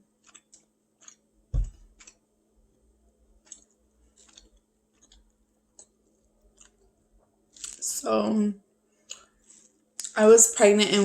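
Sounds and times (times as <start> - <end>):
mouth clicks and chewing: 0.2 - 1.2, 3.4 - 6.8
low thump: 1.5 - 1.8.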